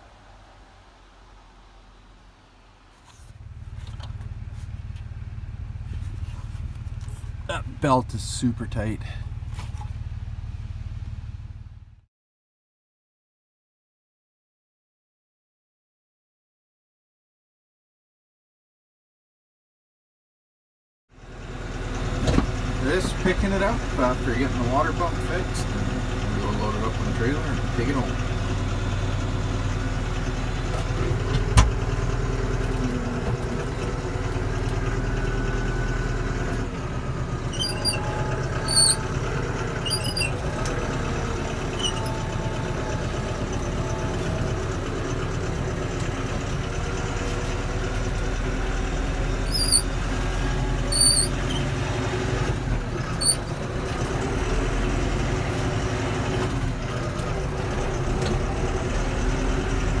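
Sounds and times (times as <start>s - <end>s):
tractor diesel engine running: 2.9s - 12.1s, 21.2s - 60.0s
short high-pitched squeaks: 37.4s - 44.2s, 49.4s - 50.1s, 50.7s - 51.8s, 53.1s - 53.5s.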